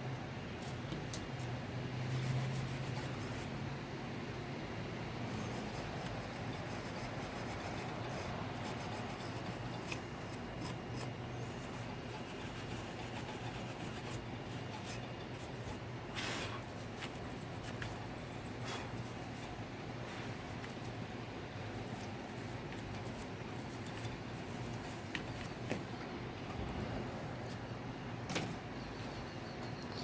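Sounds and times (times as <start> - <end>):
wire brush scrubbing metal: 5.3 - 18.0.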